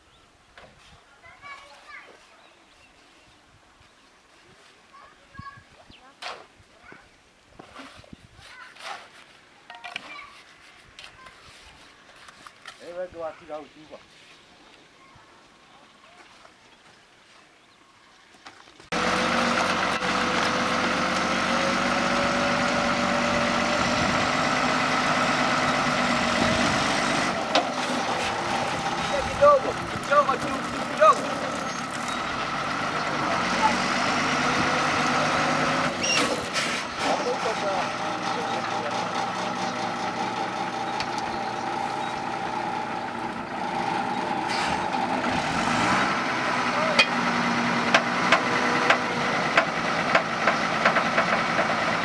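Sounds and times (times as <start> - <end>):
engine running loudly: 18.9 - 52.0.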